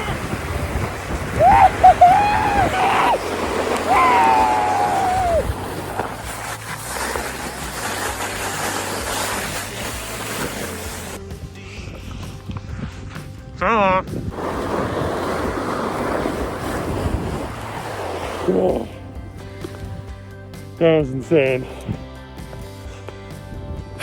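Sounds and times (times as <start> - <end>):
board scraping down gravel: 0.0 - 13.4, 14.3 - 20.7
wind: 0.0 - 24.0
person whooping: 1.4 - 3.2, 3.8 - 5.5.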